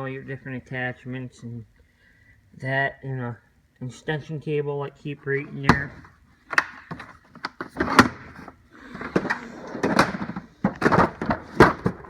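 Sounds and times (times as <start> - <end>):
steel drawers sliding and shutting: 7.0 - 12.0.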